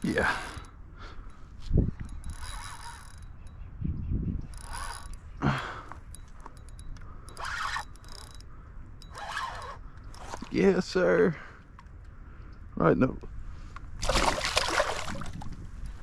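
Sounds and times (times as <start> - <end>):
fishing reel cranking: 0.2 - 0.7, 1.9 - 3.6, 4.4 - 5.3, 6.1 - 10.6.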